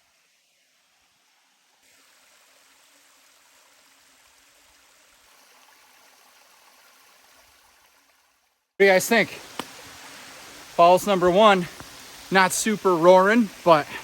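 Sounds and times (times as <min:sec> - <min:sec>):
faint waterfall rushing: 0:08.8 - 0:14.0.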